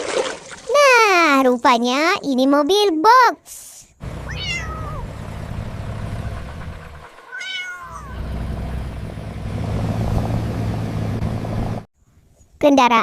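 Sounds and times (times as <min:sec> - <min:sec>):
low engine-like hum: 0:04.0 - 0:11.9
wavering cries: 0:04.2 - 0:05.2, 0:07.1 - 0:08.3.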